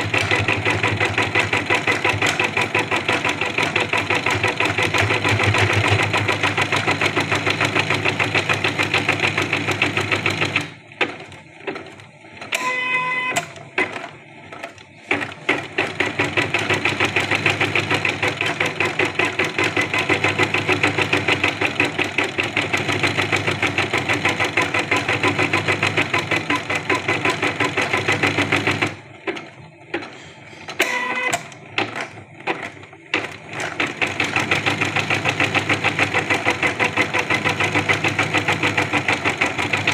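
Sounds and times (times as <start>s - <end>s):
embroidery machine stitching: 0.0s - 39.9s
short electronic beep: 12.6s - 13.4s.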